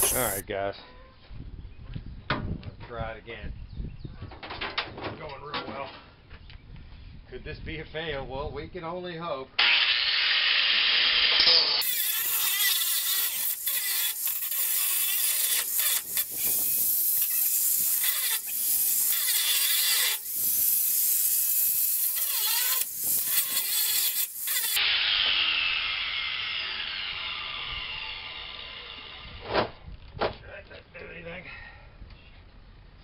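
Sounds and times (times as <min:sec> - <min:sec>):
angle grinder cutting metal: 0:00.0 - 0:00.4, 0:09.6 - 0:29.4
grinder spinning down: 0:00.0 - 0:00.4, 0:09.6 - 0:29.4.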